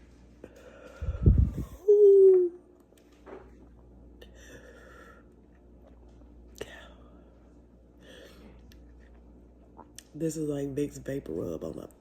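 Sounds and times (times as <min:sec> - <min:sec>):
woman humming: 0:01.6 - 0:02.6.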